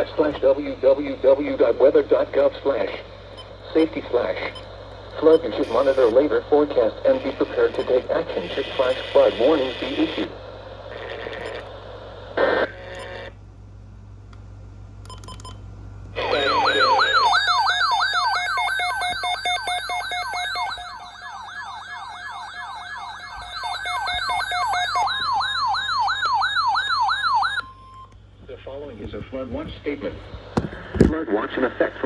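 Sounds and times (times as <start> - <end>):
warbling electronic alert siren: 16.2 - 27.8.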